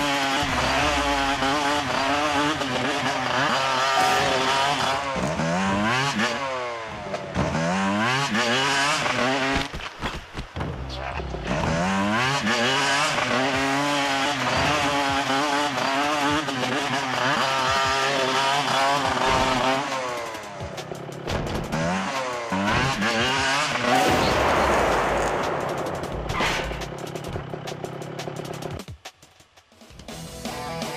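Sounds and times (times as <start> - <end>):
motocross bike engines revving: 0.0 - 9.7, 10.7 - 28.8
rough noisy rush: 23.6 - 28.5.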